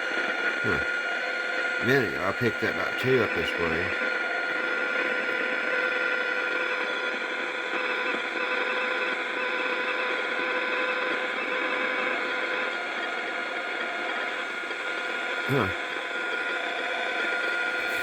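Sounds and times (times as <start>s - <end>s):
radio static hiss: 0.1s - 9.2s, 11.6s - 18.0s.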